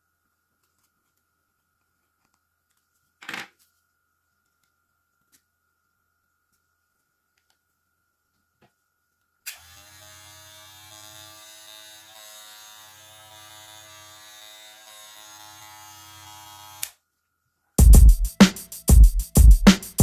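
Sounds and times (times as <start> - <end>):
hair clipper buzzing: 9.5 - 17.0.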